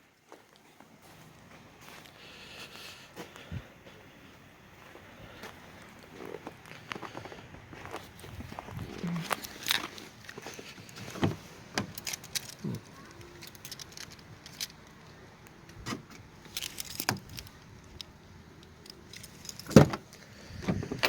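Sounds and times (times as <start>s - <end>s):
light clicks and rattles: 8.6s - 21.0s.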